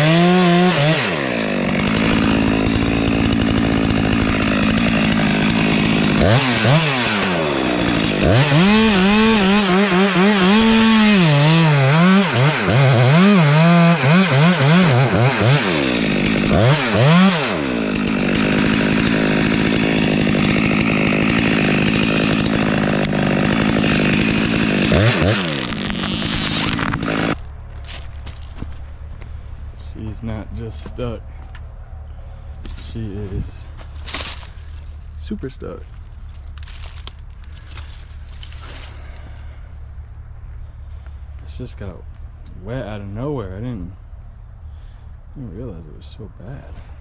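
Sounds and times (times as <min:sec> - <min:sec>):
chainsaw running at high revs: 0:00.0 - 0:27.5, 0:32.6 - 0:39.7.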